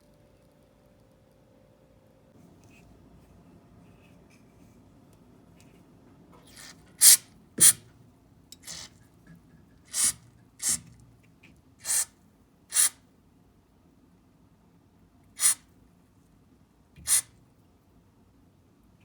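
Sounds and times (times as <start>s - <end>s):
aerosol spray can hissing: 6.6s - 7.8s, 8.6s - 8.9s, 9.9s - 10.9s, 11.8s - 12.1s, 12.7s - 13.0s, 15.4s - 15.6s, 17.0s - 17.3s.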